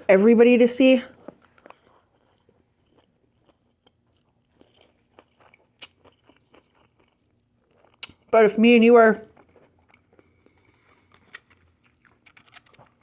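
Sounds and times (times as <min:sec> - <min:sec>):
chewing and mouth clicks: 0:01.1 - 0:08.4, 0:09.3 - 0:13.0.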